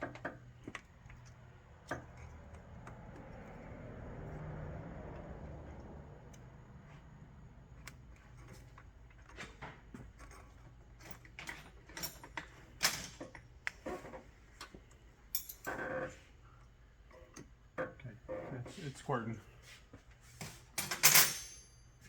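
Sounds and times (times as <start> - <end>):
tools clicking and knocking: 20.8 - 21.8.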